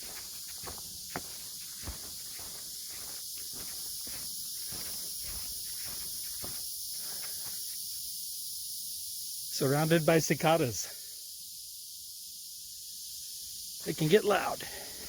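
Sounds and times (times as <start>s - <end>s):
footsteps on a trail: 0.0s - 8.0s
cicadas droning: 0.0s - 15.0s.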